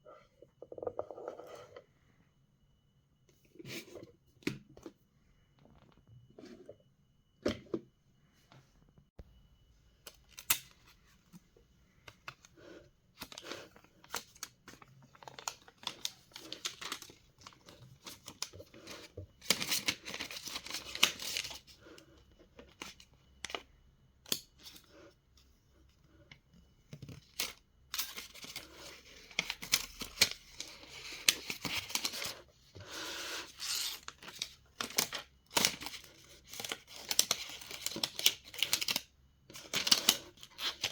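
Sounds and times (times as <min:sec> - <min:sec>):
paper and plastic tearing: 0:33.5 - 0:39.0.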